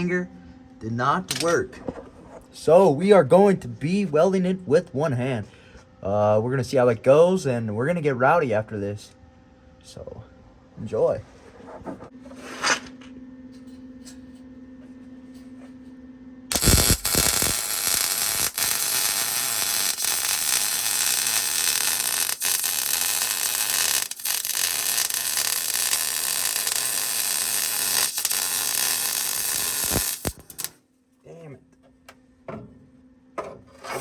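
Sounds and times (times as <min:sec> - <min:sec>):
arc welder crackling hiss: 0:16.5 - 0:30.8.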